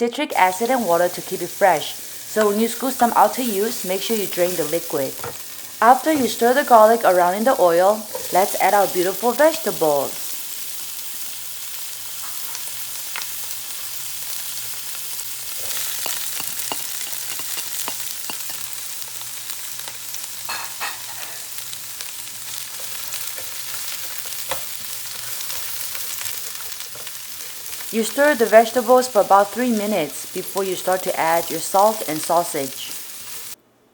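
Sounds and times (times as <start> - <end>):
vegetables sizzling in oil: 0.3 - 33.6
utensil scraping pan: 15.5 - 18.8.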